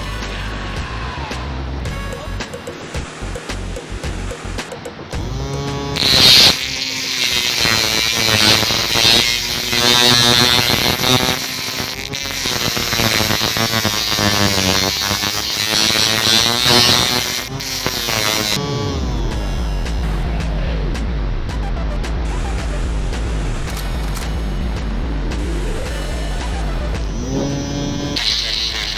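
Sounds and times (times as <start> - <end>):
small motor whining: 5.2 - 20.1, 25.9 - 28.9
steady high hiss: 5.5 - 18.6.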